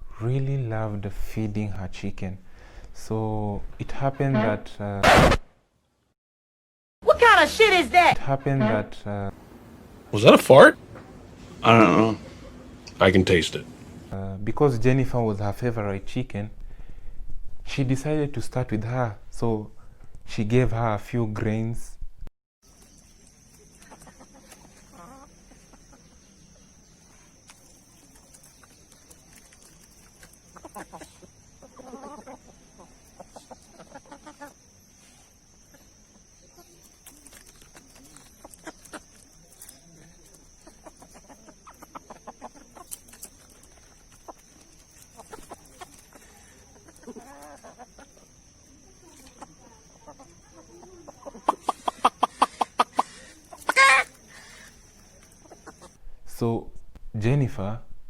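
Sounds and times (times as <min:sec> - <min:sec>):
chickens clucking: 0:10.8 - 0:13.4, 0:22.7 - 0:56.0
chicken calls: 0:11.6 - 0:12.9, 0:22.7 - 0:56.0.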